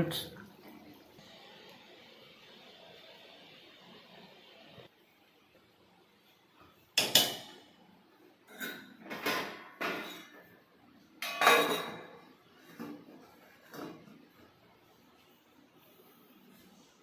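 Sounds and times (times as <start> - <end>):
pots and lids clanking: 7.0 - 7.7, 8.5 - 10.4, 11.2 - 14.2.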